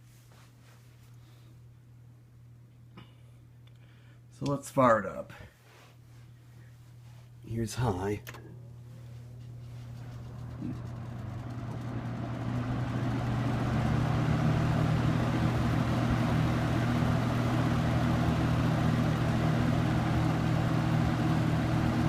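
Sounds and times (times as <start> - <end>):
box fan running: 6.2 - 22.0.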